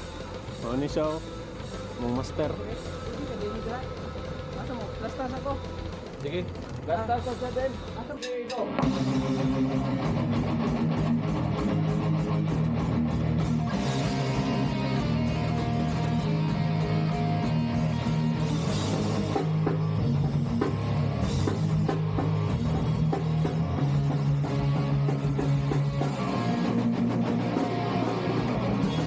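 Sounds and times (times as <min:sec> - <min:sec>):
drum kit beat: 0:00.0 - 0:29.0
electric guitar chords: 0:08.7 - 0:29.0.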